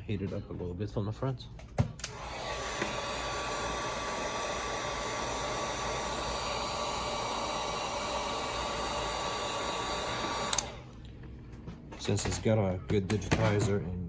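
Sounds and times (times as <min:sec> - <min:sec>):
hot-air tool blowing: 0:02.0 - 0:11.0.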